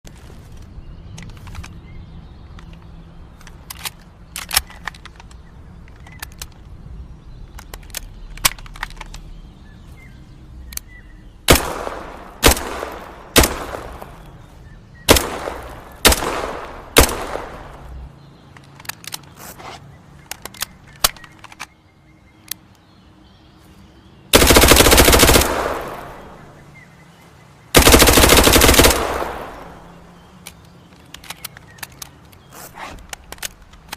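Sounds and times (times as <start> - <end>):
faint clicks: 0.6 - 6.8, 7.4 - 9.4, 10.6 - 11.0, 17.3 - 22.9, 29.4 - 33.9
submachine gun single shots: 11.5 - 14.2, 15.1 - 17.9, 24.4 - 26.4, 27.8 - 30.0
automatic gunfire bursts: 15.1 - 17.7, 24.3 - 26.4, 27.8 - 30.0.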